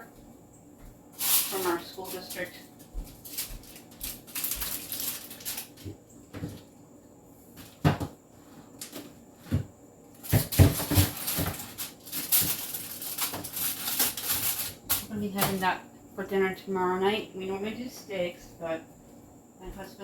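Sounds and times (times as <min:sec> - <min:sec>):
packages rustling: 0:01.2 - 0:06.7, 0:10.2 - 0:15.2
items knocking on shelves: 0:07.7 - 0:08.2, 0:09.0 - 0:15.6.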